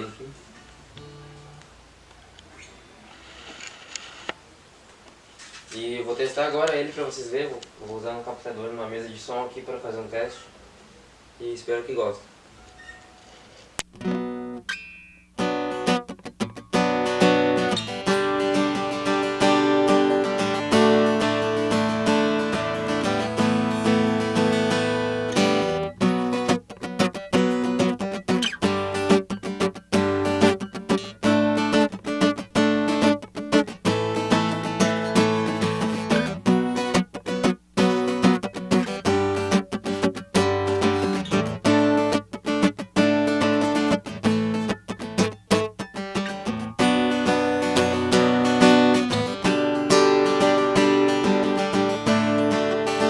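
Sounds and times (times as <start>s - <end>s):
acoustic guitar chords: 0.9s - 1.9s, 12.6s - 53.0s.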